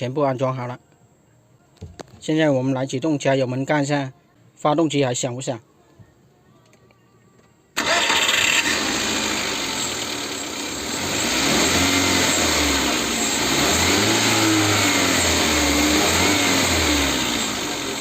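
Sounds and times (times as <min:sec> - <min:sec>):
car engine revving: 0:07.8 - 0:18.0.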